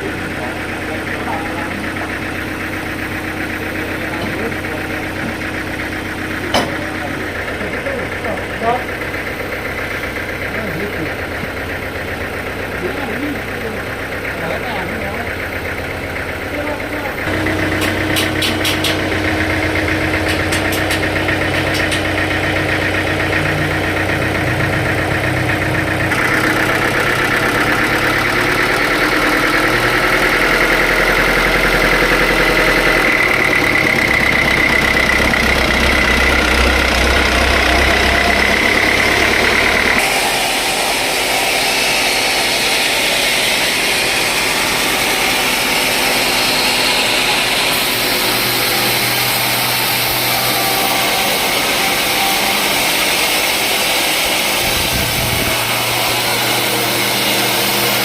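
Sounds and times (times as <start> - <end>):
rising machine whine: 0.0 - 58.0
sawmill machinery engine drone: 0.0 - 58.0.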